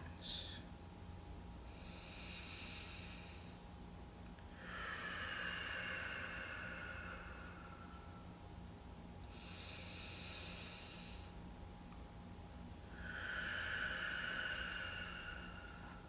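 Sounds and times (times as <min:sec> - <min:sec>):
deep breathing through the nose: 0:01.6 - 0:08.4, 0:09.1 - 0:11.6, 0:12.8 - 0:16.0.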